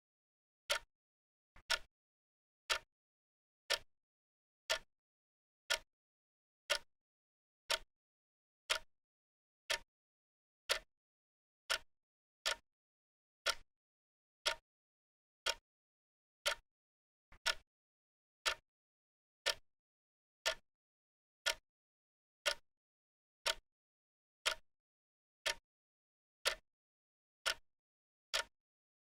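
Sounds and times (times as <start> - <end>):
clock ticking: 7.7 - 7.9, 13.4 - 13.6, 14.4 - 14.6, 17.4 - 17.6, 23.4 - 23.6, 28.4 - 28.6.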